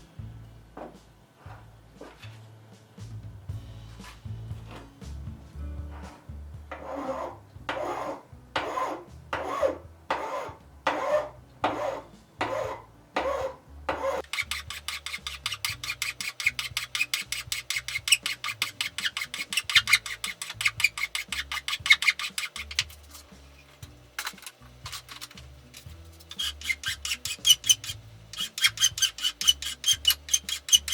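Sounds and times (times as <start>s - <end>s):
file scraping wood: 6.0s - 23.7s, 24.9s - 30.9s.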